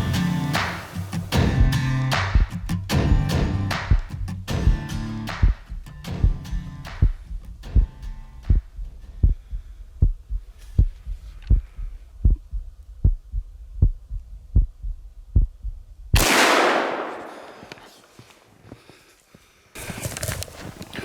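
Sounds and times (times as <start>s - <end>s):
heartbeat-like thumping: 1.1s - 16.2s
gunshot rolling away: 16.2s - 17.9s.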